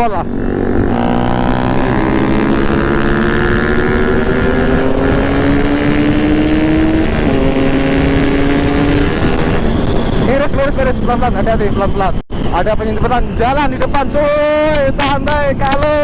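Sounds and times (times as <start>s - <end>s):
motorcycle engine accelerating: 0.0s - 10.3s
wind buffeting microphone: 0.0s - 16.0s.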